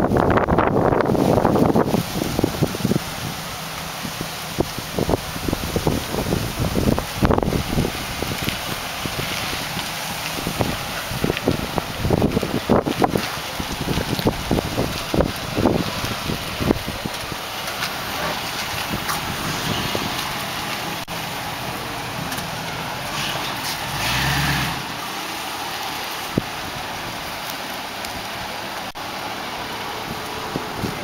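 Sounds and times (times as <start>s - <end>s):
wind noise on microphone: 0.0s - 21.1s, 30.0s - 31.0s
car engine idling: 0.0s - 24.1s.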